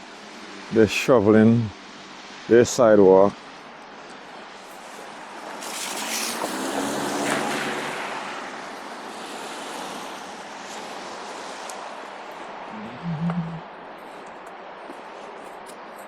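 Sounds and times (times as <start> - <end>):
tyre hiss through wet snow: 0.0 - 12.7
faint engine hum: 12.7 - 14.2.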